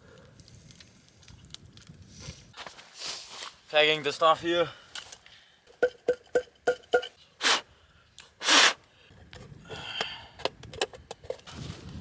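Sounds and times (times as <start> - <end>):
sharp breaths through nose: 7.4 - 7.8, 8.4 - 8.9
camping gear rustling and clicking: 10.4 - 12.0.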